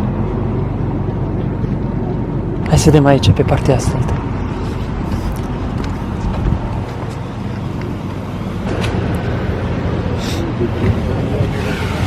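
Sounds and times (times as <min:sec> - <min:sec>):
fire engines idling: 0:00.0 - 0:03.2, 0:04.1 - 0:12.0.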